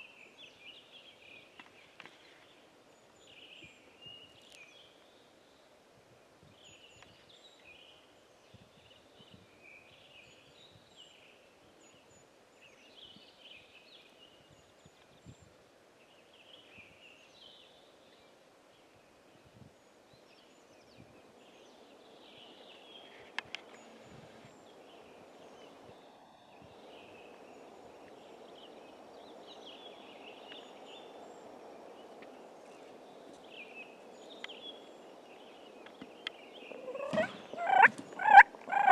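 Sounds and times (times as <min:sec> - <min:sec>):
bird chirping: 0:20.2 - 0:38.9.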